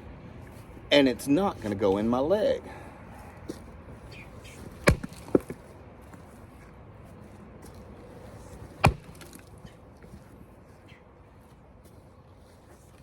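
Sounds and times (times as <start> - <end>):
maul striking firewood: 4.8 - 5.6, 8.8 - 9.6.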